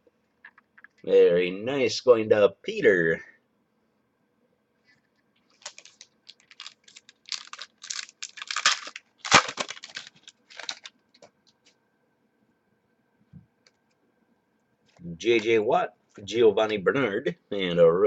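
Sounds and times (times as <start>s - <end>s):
plastic packaging crinkling: 5.5s - 11.3s.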